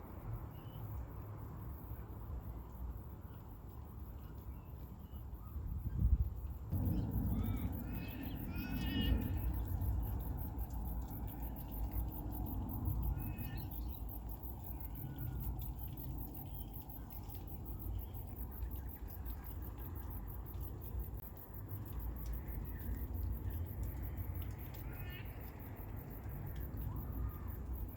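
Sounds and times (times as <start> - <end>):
low rumble: 6.7 - 19.0
insect trilling: 6.8 - 15.7.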